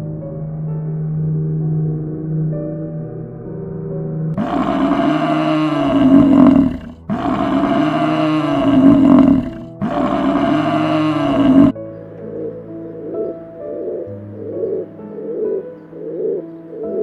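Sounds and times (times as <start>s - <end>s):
large animal roaring: 4.4s - 11.8s.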